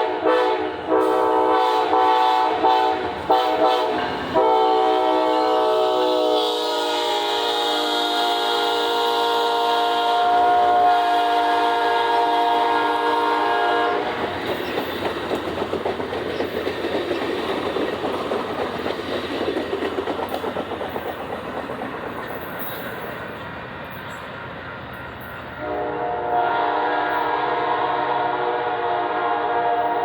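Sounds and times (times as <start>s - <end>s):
train air horn: 0.0s - 14.2s, 25.6s - 30.0s
train wheels clattering on rails: 10.7s - 27.2s.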